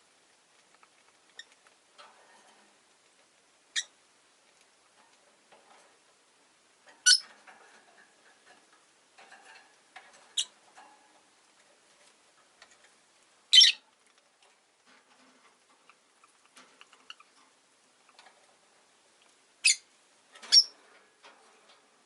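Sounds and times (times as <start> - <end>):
lovebird sharp high calls: 7.0 - 7.2, 13.5 - 13.8.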